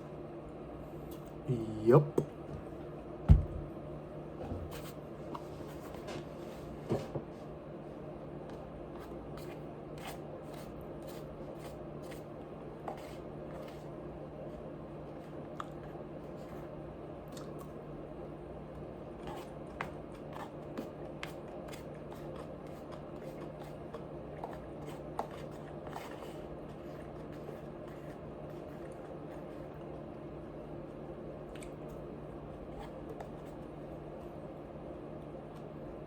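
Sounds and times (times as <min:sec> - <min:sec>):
steady low hum: 0:00.0 - 0:36.0
food being chewed: 0:15.2 - 0:17.8, 0:19.1 - 0:34.4.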